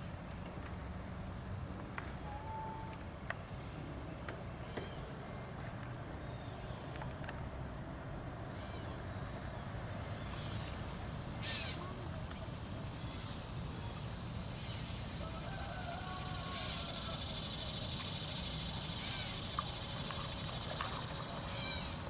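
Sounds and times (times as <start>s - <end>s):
faint bird calls: 8.5s - 9.0s, 10.2s - 10.8s, 11.4s - 12.0s, 14.5s - 22.0s.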